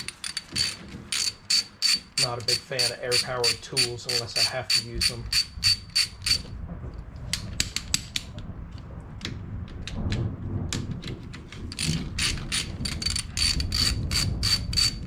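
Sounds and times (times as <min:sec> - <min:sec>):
ratchet wrench clicking: 0:00.0 - 0:06.4, 0:11.8 - 0:15.0.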